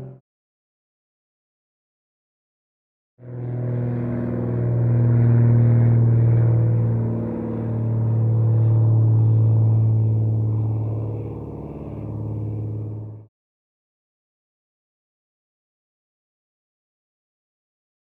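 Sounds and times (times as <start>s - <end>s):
aircraft hum: 0.0s - 0.2s, 3.2s - 13.3s.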